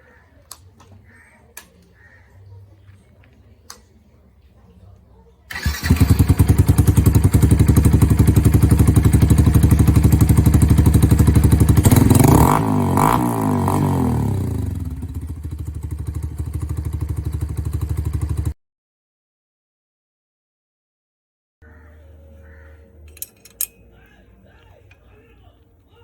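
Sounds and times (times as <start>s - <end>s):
motorcycle engine running loud: 5.5s - 18.6s.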